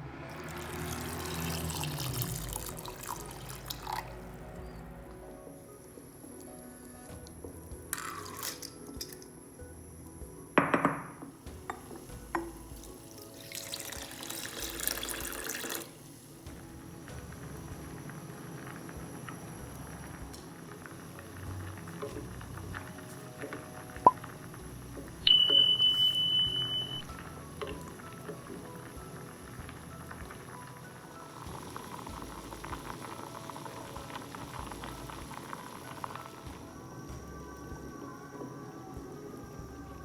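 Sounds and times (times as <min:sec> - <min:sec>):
soft background music: 0:00.0 - 0:40.0
water pouring: 0:00.3 - 0:04.6, 0:07.9 - 0:09.2, 0:12.2 - 0:36.7
high steady tone: 0:25.3 - 0:27.2.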